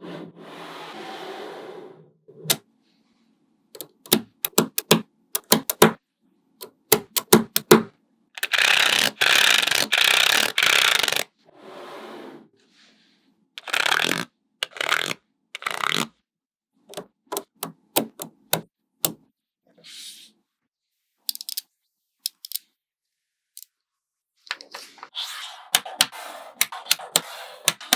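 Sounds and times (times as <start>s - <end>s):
magnetic balls clicking together: 3.8s - 6.0s, 6.6s - 11.2s, 16.9s - 19.2s, 21.3s - 21.6s, 22.3s - 22.6s.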